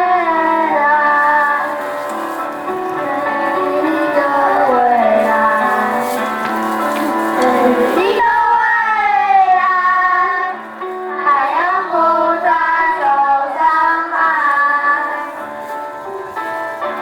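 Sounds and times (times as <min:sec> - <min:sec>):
musical accompaniment: 0:00.0 - 0:17.0
high child-like voice singing: 0:07.4 - 0:10.6.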